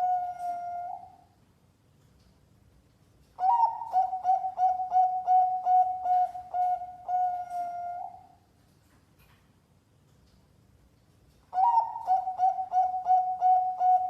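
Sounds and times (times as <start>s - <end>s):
dove cooing: 0.0s - 1.2s, 3.4s - 8.4s, 11.6s - 14.0s.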